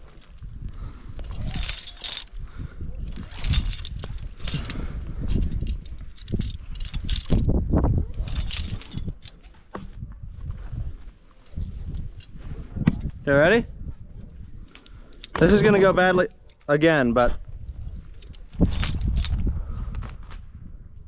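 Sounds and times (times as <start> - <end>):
climbing gear clinking: 0.0 - 20.1.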